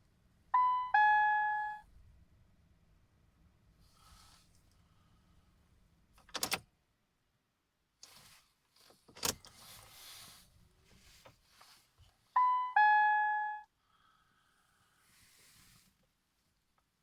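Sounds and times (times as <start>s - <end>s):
car dashboard two-note chime: 0.6s - 1.8s, 12.4s - 13.7s.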